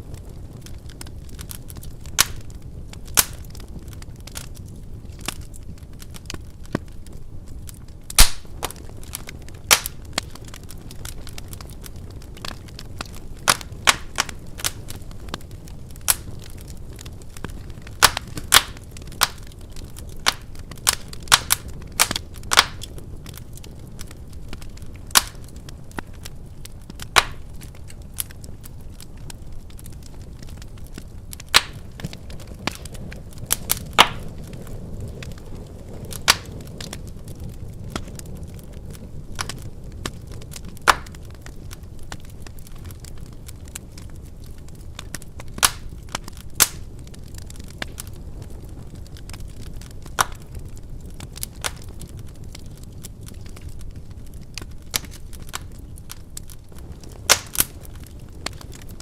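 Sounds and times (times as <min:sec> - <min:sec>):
fire flames rushing: 0:00.0 - 0:59.0
logs crackling and popping: 0:00.0 - 0:59.0.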